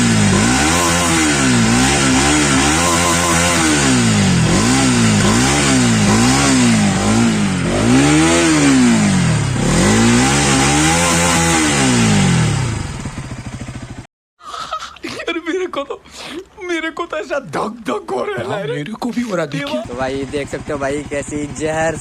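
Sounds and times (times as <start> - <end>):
motorcycle engine revving: 0.0 - 14.1, 19.8 - 22.0.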